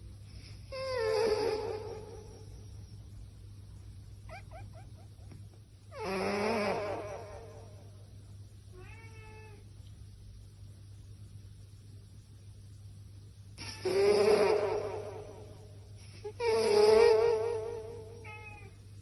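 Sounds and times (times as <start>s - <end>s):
steady low hum: 0.0s - 19.0s
cat chirping and meowing: 4.2s - 7.5s, 8.8s - 9.6s, 13.6s - 14.9s, 16.4s - 18.8s.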